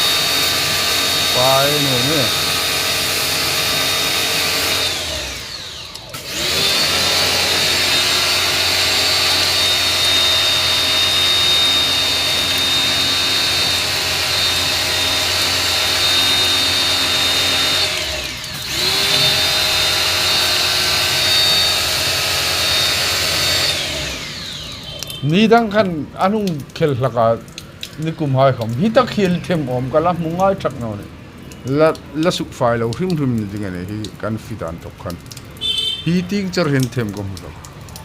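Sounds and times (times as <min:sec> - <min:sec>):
electric tool whining: 0:00.0 - 0:25.2.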